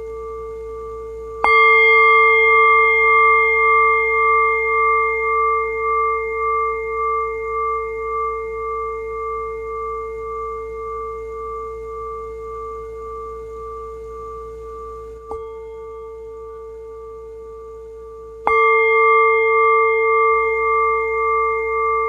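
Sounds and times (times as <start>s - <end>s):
meditation bell ringing: 0.0s - 22.0s.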